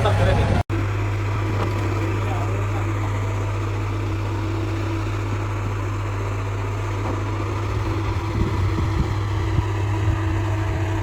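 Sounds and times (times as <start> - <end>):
machinery running: 0.0 - 11.0.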